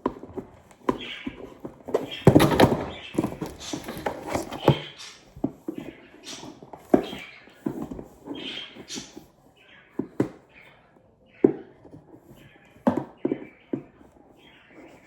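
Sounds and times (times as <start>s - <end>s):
packaging rustling and scraping: 0.2s - 8.5s
cardboard box knocks and thuds: 1.5s - 4.9s.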